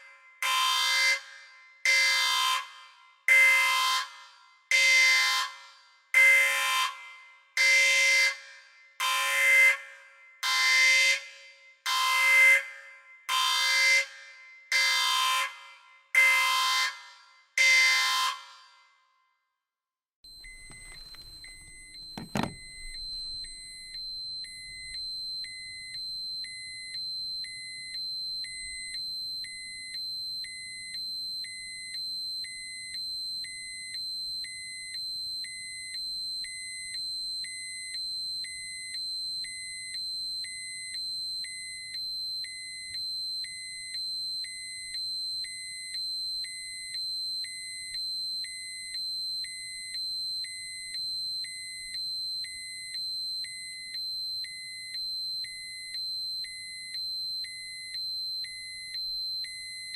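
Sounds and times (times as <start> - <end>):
electronic alarm beeping: 20.3 - 37.8, 38.4 - 59.9
buzzer blasts: 20.4 - 27.8
knock: 22.1 - 22.8.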